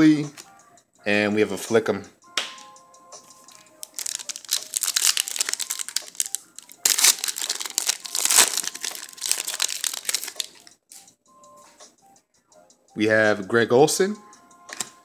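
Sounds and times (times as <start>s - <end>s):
foil wrapper crinkling: 3.5s - 10.6s.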